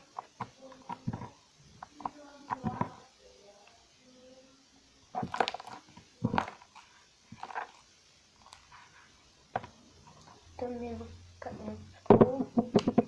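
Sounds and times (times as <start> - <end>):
slime squelching: 5.1 - 10.8.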